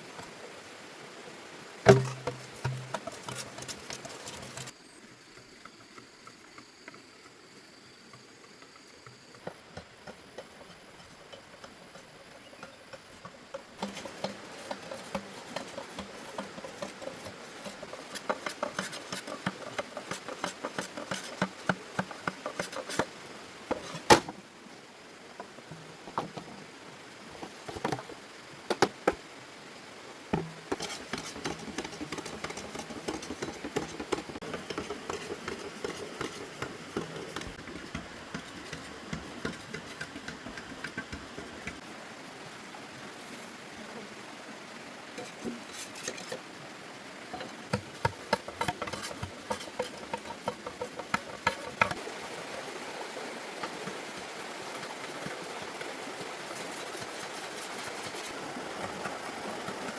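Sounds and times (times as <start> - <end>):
irregular clicks and light knocks: 1.8 - 4.8, 5.4 - 24.4, 30.3 - 41.8, 47.3 - 52.0.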